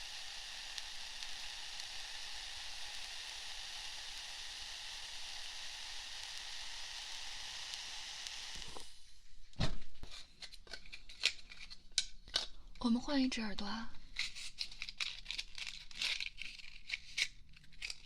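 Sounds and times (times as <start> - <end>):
ear candle sizzling hiss: 0.0 - 9.3
crisp clicks and crinkles: 14.1 - 18.0.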